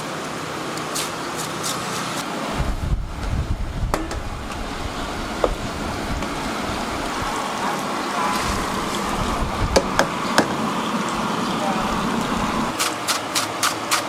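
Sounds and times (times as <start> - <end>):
steady mechanical noise: 0.0 - 14.0
sharp knocks: 9.6 - 10.6.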